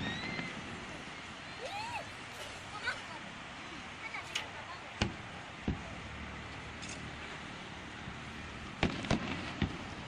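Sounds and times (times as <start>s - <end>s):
fireworks bursting: 0.0s - 3.1s, 4.4s - 7.2s, 7.9s - 10.0s
background rumble: 4.0s - 10.0s.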